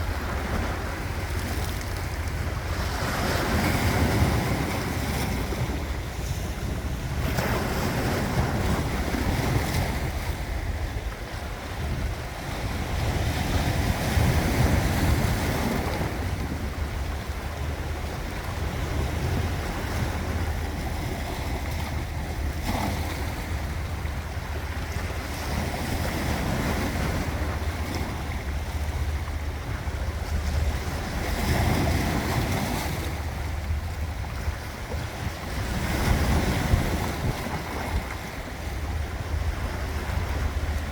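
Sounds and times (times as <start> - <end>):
ocean waves breaking on shore: 0.0 - 40.9
wind rumbling on microphone: 0.0 - 40.9.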